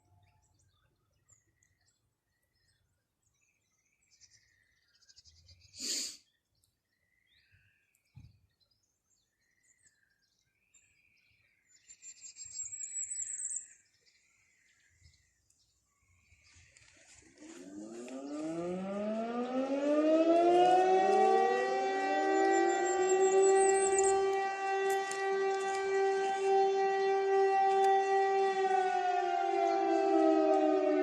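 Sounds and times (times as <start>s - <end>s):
birds chirping: 0.0s - 31.0s
warning siren winding up: 17.3s - 31.0s.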